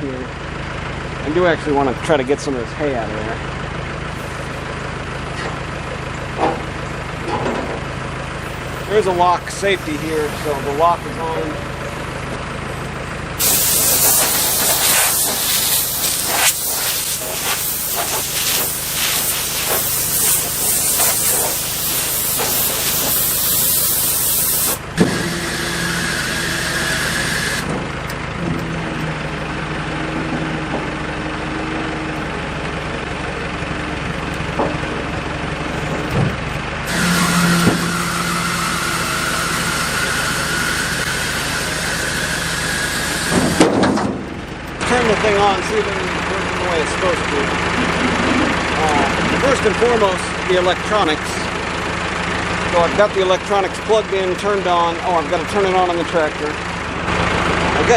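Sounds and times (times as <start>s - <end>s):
tractor engine idling: 0.0s - 57.9s
loud rushing hiss: 13.4s - 25.0s, 36.9s - 43.2s.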